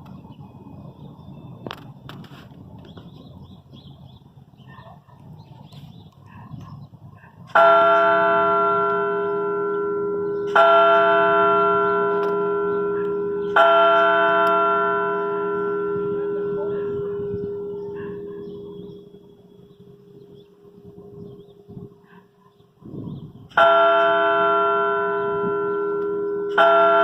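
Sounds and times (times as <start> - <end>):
church bell striking: 7.5 - 21.5, 23.5 - 27.0.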